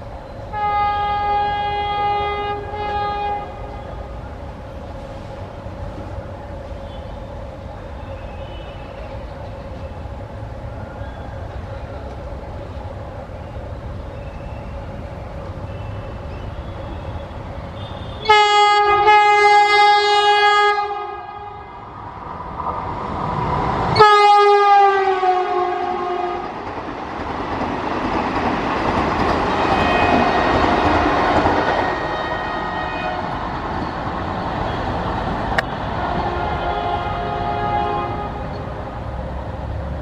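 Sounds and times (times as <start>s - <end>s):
rumble of passing train: 0.0s - 40.0s
train air horn blasts: 0.5s - 4.2s, 8.2s - 9.0s, 16.6s - 21.8s, 24.0s - 26.5s, 29.6s - 30.6s, 31.8s - 33.3s, 36.1s - 38.7s.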